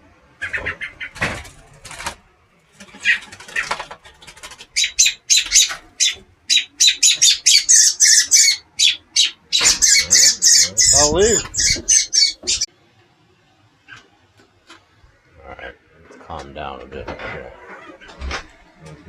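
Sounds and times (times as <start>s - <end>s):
robin alarm calls: 0.4s - 1.2s, 2.8s - 3.8s, 4.5s - 12.7s.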